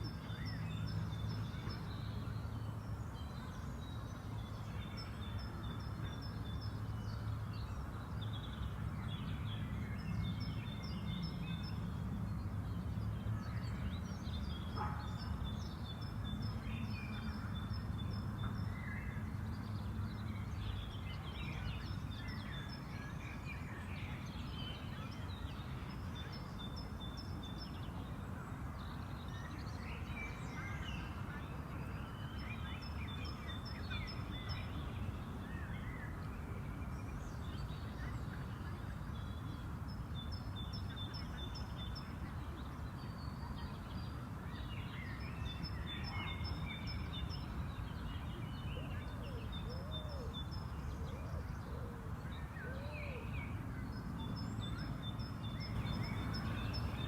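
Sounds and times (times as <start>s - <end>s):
birds chirping and singing: 54.6s - 57.0s
distant city rumble: 55.6s - 57.0s.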